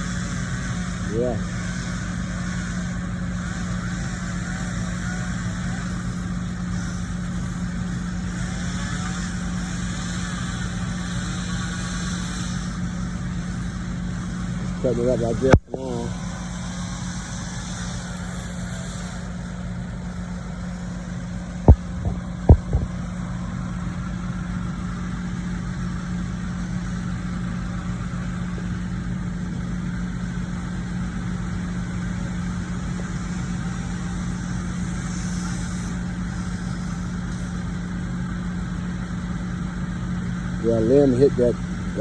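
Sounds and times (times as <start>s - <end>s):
diesel engine low drone: 0.0s - 42.0s
short sharp knocks: 21.6s - 23.0s.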